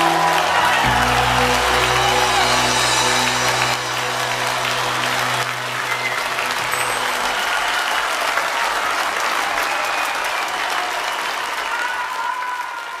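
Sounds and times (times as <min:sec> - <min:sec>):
audience applauding: 0:00.0 - 0:13.0
whistles: 0:04.4 - 0:10.8.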